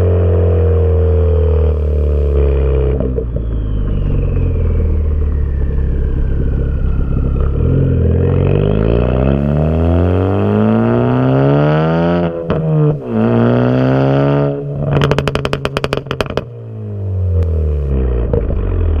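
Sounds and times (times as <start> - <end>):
exhaust pops and crackles: 1.8 - 8.2, 14.8 - 16.5, 17.4 - 19.0
car engine revving hard: 7.6 - 16.4.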